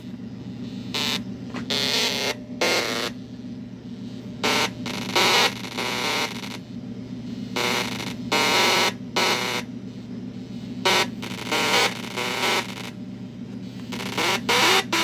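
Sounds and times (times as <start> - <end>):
low electrical hum: 0.0 - 15.0
glitchy electronic toy bursts: 13.8 - 15.0.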